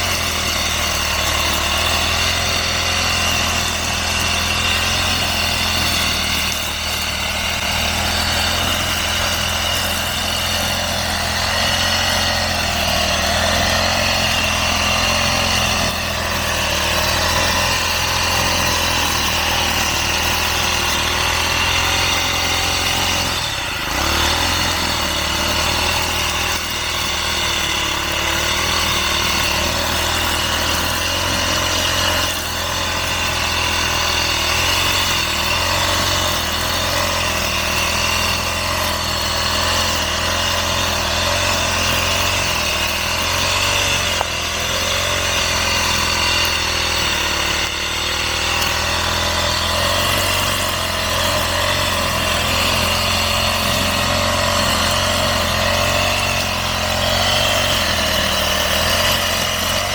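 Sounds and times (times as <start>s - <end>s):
grass cutter engine running: 0.0s - 59.9s.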